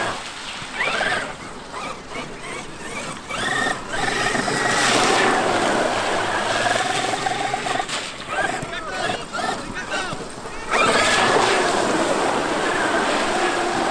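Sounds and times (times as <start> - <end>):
electric motor whining: 0.0 - 13.9
noisy rush: 0.0 - 13.9.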